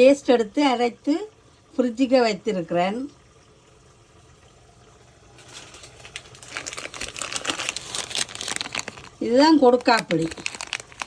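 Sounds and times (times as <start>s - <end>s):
packaging crackling and clicking: 5.5s - 11.0s.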